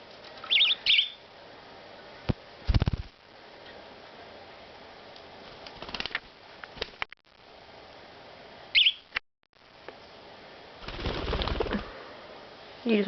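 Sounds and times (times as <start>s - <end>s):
budgerigar chirp: 0.5s - 1.2s, 8.8s - 9.1s.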